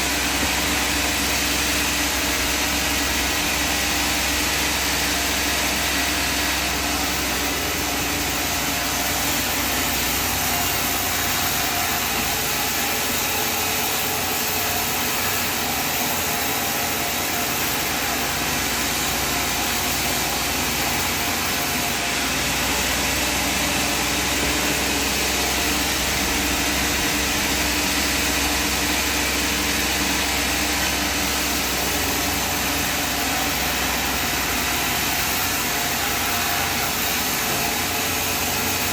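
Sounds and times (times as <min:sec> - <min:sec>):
sawmill machinery running: 0:00.0 - 0:38.9.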